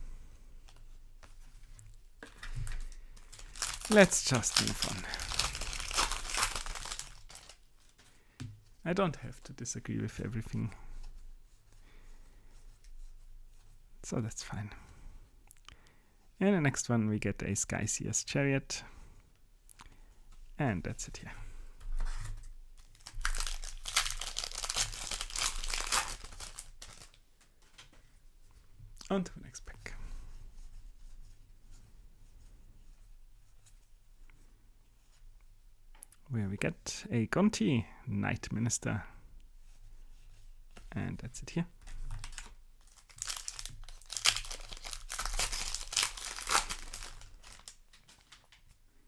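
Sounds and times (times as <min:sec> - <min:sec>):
foil wrapper crinkling: 0:02.7 - 0:08.0, 0:22.8 - 0:27.2, 0:42.2 - 0:48.6.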